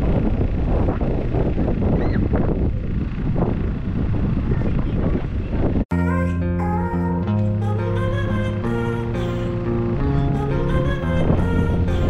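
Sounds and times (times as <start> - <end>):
wind buffeting microphone: 0.0 - 5.9, 9.9 - 12.0.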